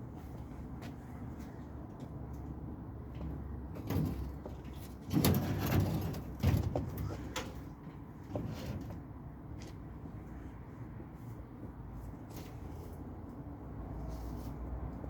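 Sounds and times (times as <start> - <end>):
metal tool box knocking and scraping: 3.8 - 7.6.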